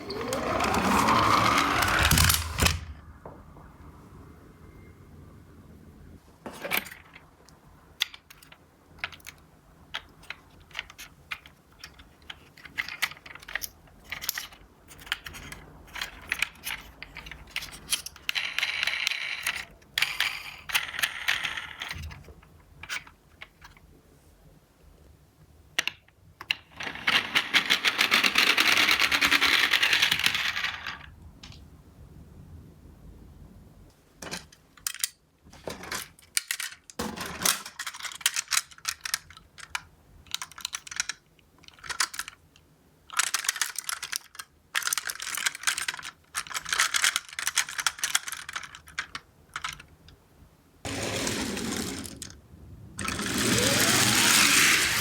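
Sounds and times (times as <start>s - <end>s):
metal toy cars clattering: 34.2s - 42.4s, 50.9s - 52.4s, 53.0s - 55.0s.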